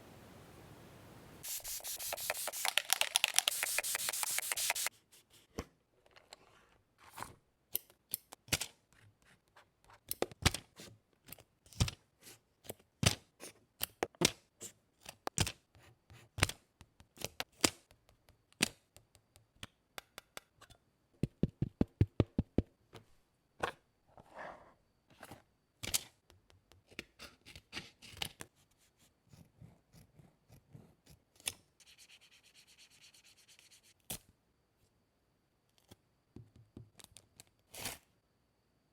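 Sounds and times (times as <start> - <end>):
paper rubbing and rustling: 1.4 - 4.9
quick run of clicks: 1.8 - 4.9.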